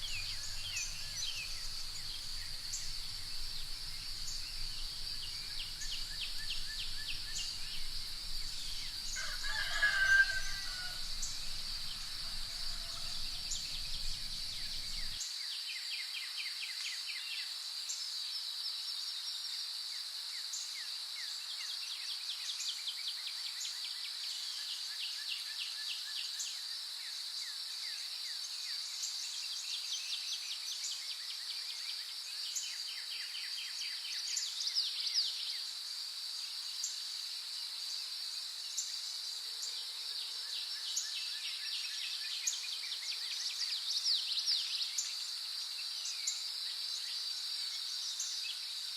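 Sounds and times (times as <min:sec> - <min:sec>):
rooster crowing: 0:00.0 - 0:03.6, 0:05.9 - 0:15.2
small birds chirping: 0:00.0 - 0:15.2
high insect drone: 0:00.0 - 0:15.3.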